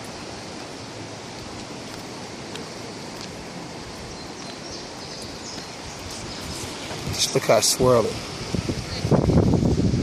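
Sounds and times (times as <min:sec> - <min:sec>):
river rushing: 0:00.0 - 0:10.0.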